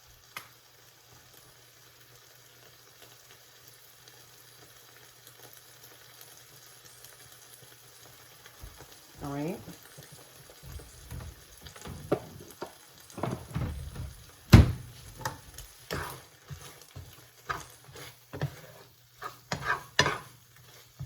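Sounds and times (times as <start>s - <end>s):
utensil scraping in a pan: 9.2s - 21.0s.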